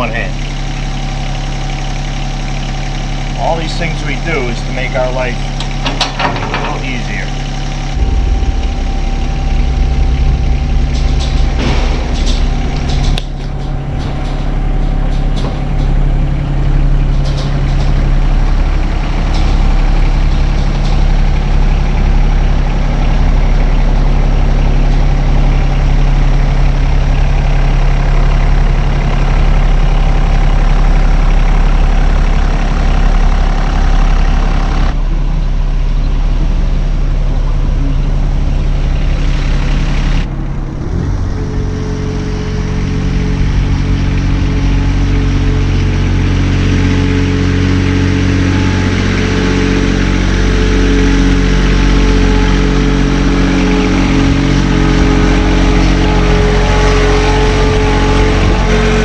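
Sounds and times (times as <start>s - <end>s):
light clanks and rattles: 0.0s - 31.0s
engine running: 0.0s - 59.0s.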